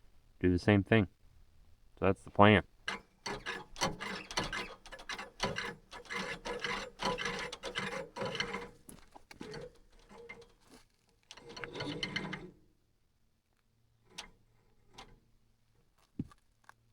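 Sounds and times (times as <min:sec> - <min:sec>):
rough scraping on wood: 0:02.9 - 0:12.6.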